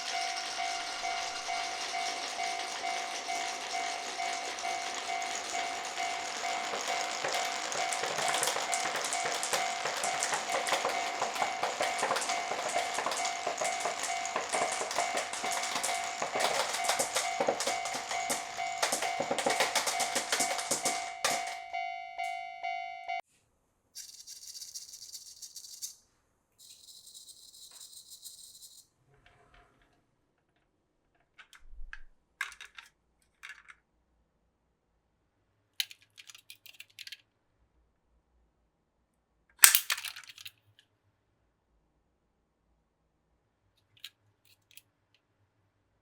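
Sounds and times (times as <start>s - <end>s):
marbles rolling on wooden run: 0.0s - 21.7s
steady ringing tone: 0.0s - 23.2s.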